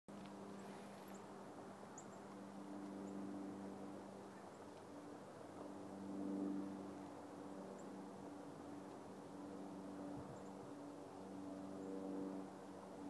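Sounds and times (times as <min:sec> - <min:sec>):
low mechanical hum: 0:00.1 - 0:13.0.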